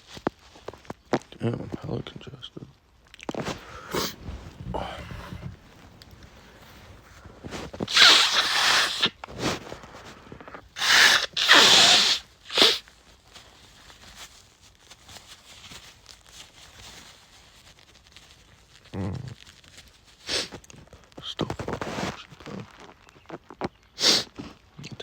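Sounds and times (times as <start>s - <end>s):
man's hissing nasal bursts: 3.6s - 5.6s, 7.5s - 9.7s, 10.6s - 12.8s, 20.2s - 20.6s, 24.0s - 24.4s.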